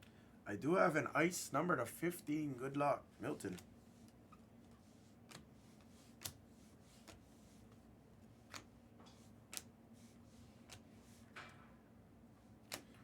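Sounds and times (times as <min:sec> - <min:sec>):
trading cards clicking: 0:08.4 - 0:08.8, 0:12.6 - 0:13.0.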